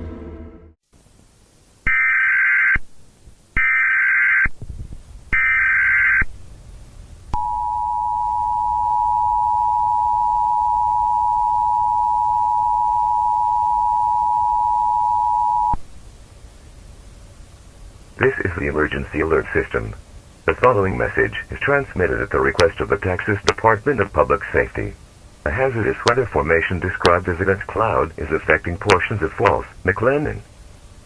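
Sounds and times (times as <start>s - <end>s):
data burst tones: 7.4s - 15.8s
steady dual tone alert signal: 7.4s - 15.8s.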